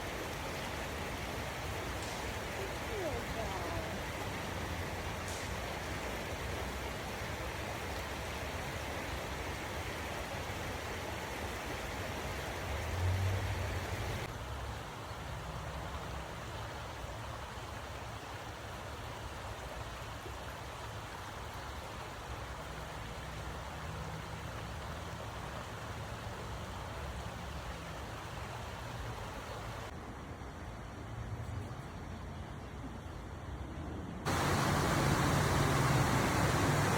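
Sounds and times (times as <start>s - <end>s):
waterfall rushing: 0.0s - 14.3s, 34.3s - 36.9s.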